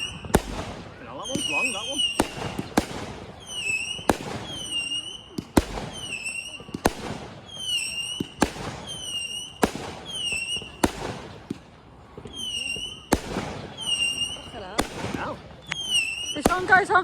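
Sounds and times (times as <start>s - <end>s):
firework whistles dropping in pitch: 0.0s - 0.5s, 1.2s - 2.8s, 3.4s - 6.8s, 7.4s - 10.8s, 12.3s - 13.1s, 13.8s - 14.6s, 15.6s - 16.5s
firework bangs: 0.0s - 17.0s.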